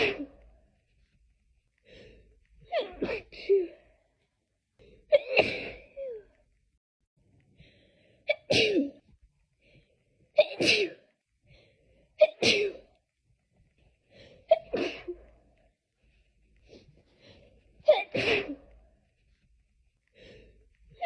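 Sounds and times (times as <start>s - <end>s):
person sneezing: 0.0s - 0.4s, 10.4s - 11.1s, 17.9s - 18.7s.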